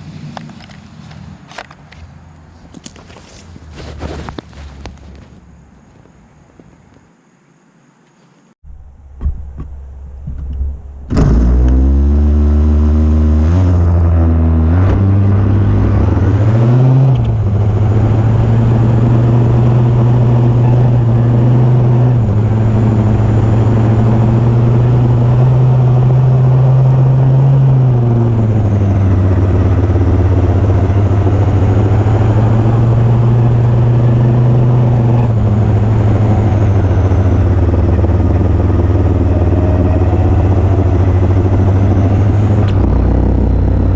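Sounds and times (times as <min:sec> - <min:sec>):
small two-stroke engine revving: 0:11.1 - 0:43.9.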